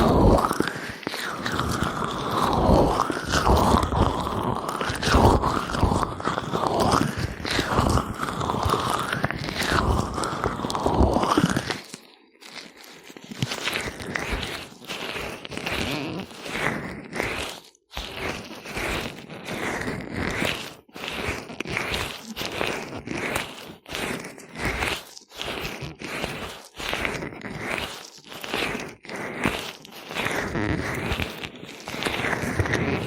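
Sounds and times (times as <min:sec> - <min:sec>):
gloved hands rubbing oil on ears: 0:11.7 - 0:33.0.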